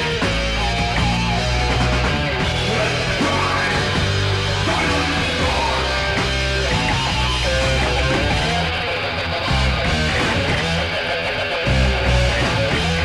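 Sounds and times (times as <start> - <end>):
thrash metal band playing: 0.0 - 13.0.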